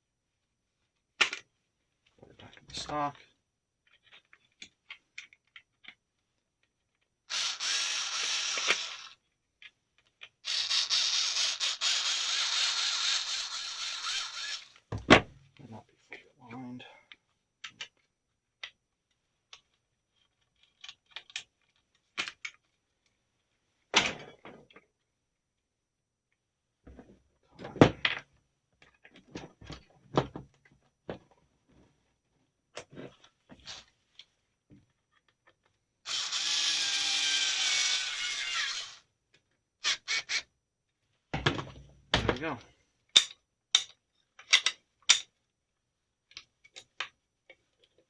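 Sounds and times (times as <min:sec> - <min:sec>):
small electric power tool running: 0:07.3 - 0:09.2, 0:10.5 - 0:14.7, 0:36.1 - 0:39.0
rifle parts clicking and knocking: 0:43.1 - 0:45.4, 0:46.2 - 0:48.0.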